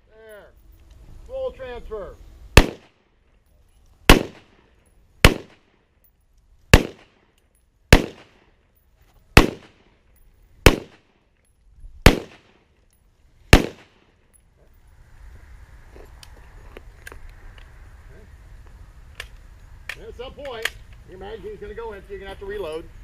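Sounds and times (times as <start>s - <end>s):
rifle shots with echo: 2.6s - 3.0s, 4.1s - 4.6s, 5.2s - 5.7s, 6.7s - 7.3s, 7.9s - 8.5s, 9.4s - 10.0s, 10.6s - 11.1s, 12.0s - 12.7s, 13.5s - 14.1s.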